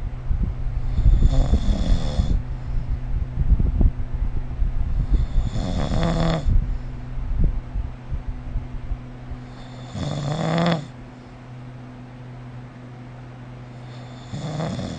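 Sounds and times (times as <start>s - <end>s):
person snoring: 0.9s - 2.4s, 5.0s - 6.6s, 9.5s - 10.9s, 13.8s - 14.9s.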